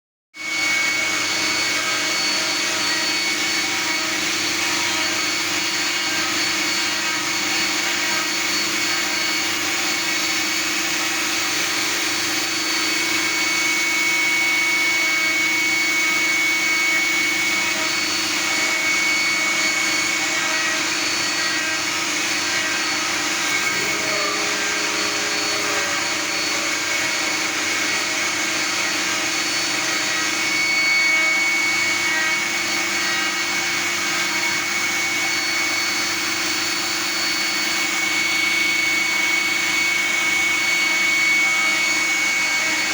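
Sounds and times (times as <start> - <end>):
lathe motor high whine: 0.4 - 42.9.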